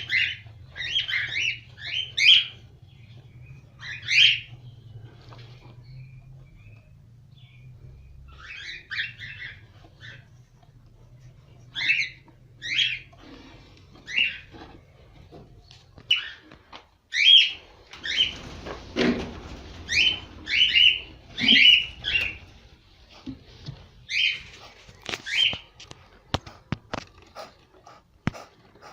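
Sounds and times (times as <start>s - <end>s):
cockatiels chirping: 0.0s - 4.5s, 8.3s - 10.3s, 11.7s - 13.1s, 14.1s - 14.5s, 16.1s - 16.4s, 19.9s - 22.4s, 24.1s - 24.4s, 25.0s - 25.6s.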